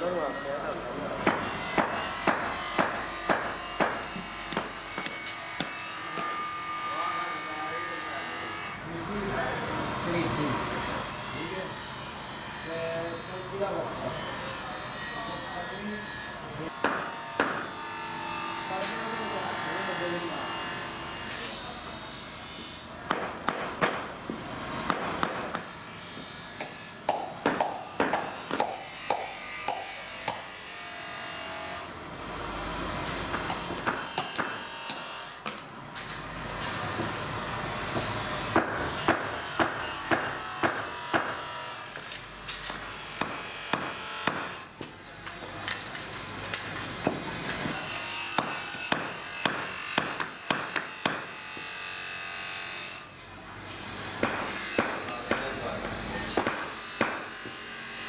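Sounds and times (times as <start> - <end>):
sharp knocks on metal: 1.2 - 6.4, 16.8 - 17.8, 23.1 - 24.1, 24.9 - 25.7, 26.6 - 30.5, 33.3 - 35.6, 38.0 - 41.4, 42.7 - 44.6, 48.4 - 51.3, 54.2 - 55.5, 56.4 - 57.6.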